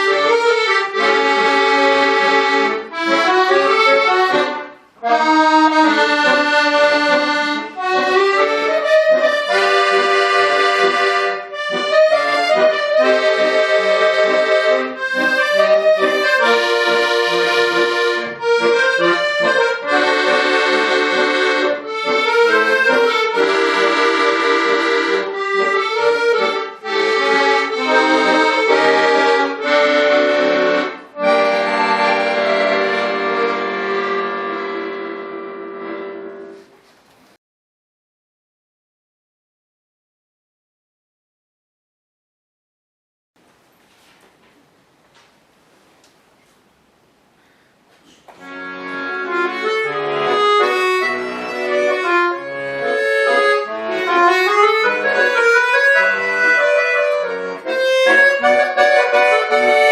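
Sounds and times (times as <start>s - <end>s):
button accordion playing chords: 0.0s - 36.8s, 48.3s - 59.9s
accordion bellows breaths: 47.4s - 49.6s.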